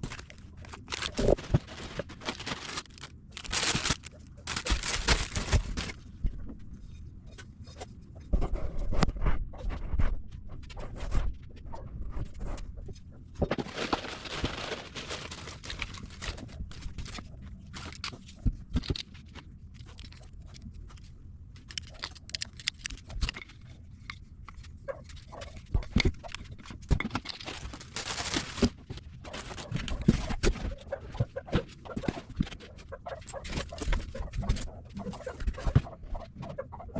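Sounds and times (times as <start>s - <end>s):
packaging rustling: 0.0s - 6.2s, 13.5s - 20.6s, 21.6s - 23.5s, 25.1s - 30.8s.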